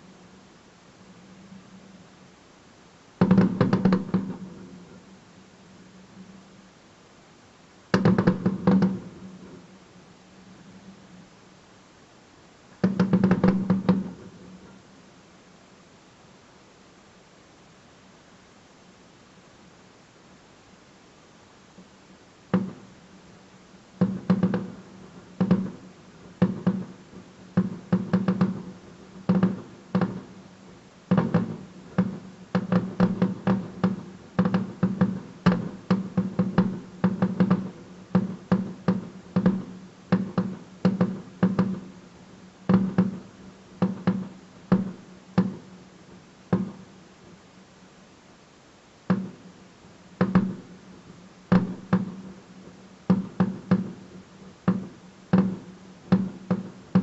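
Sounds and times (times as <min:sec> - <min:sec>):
fireworks bursting with echoing bangs: 0:03.2 - 0:05.2, 0:07.9 - 0:09.8, 0:12.8 - 0:14.8, 0:22.5 - 0:23.1, 0:23.9 - 0:47.4, 0:50.2 - 0:57.0.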